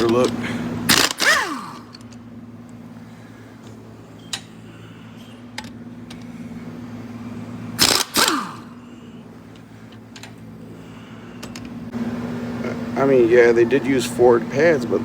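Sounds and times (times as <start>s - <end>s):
steady low hum: 0.0s - 15.0s
air impact wrench bursts: 0.7s - 2.2s, 7.4s - 9.0s
sharp metal clicks: 0.9s - 2.2s, 7.8s - 8.6s.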